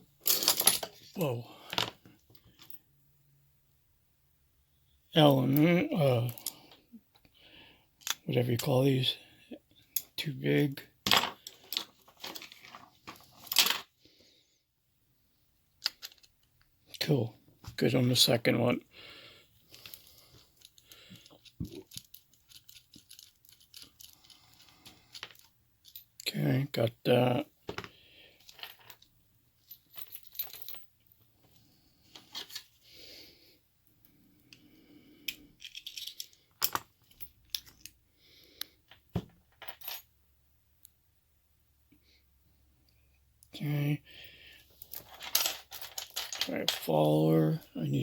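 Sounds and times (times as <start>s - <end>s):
small metal parts clinking: 0.2s - 2.8s, 6.2s - 6.8s, 11.1s - 13.9s, 15.8s - 17.0s, 19.7s - 26.3s, 27.7s - 31.1s, 35.3s - 38.0s, 38.9s - 40.1s, 44.6s - 47.7s
small metal tools clicking: 19.7s - 26.0s.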